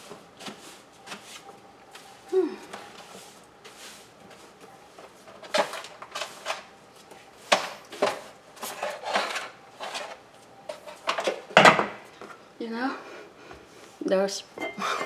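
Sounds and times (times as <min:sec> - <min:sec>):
hard objects clattering and scraping: 0:07.5 - 0:11.8.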